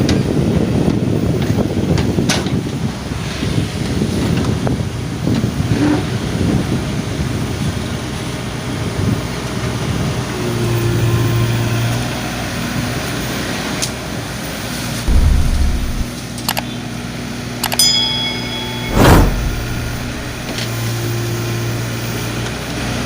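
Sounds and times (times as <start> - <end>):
low rumble: 15.1 - 16.1, 18.9 - 20.7.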